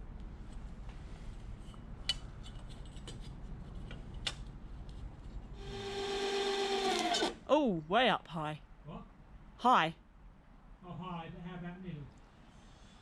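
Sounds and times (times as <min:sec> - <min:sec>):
drill grinding through wood: 0:05.6 - 0:07.4.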